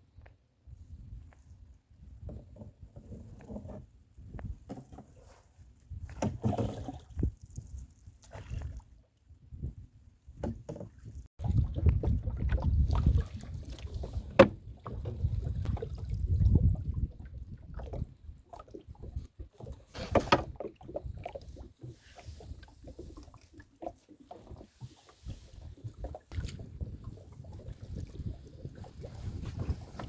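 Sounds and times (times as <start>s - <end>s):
paddle splashing water: 4.7s - 9.1s, 10.4s - 30.0s.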